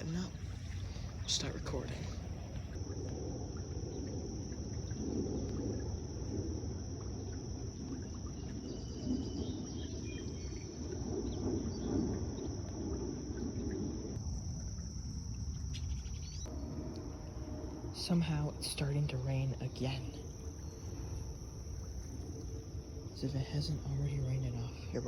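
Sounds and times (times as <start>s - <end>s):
high-pitched insect trill: 0.0s - 25.0s
low outdoor rumble: 0.0s - 25.0s.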